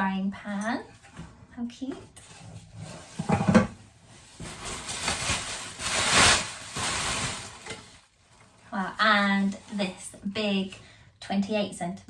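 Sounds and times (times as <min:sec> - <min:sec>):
packaging rustling and scraping: 0:02.2 - 0:10.0.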